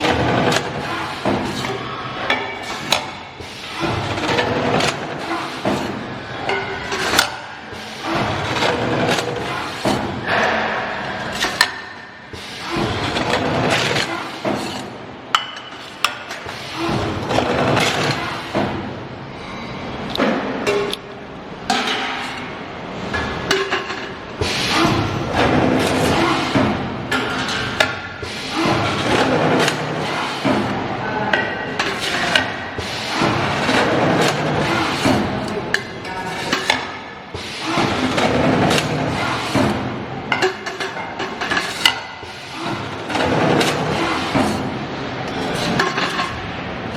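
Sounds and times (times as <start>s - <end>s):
machine knocks and thuds: 16.8s - 19.0s.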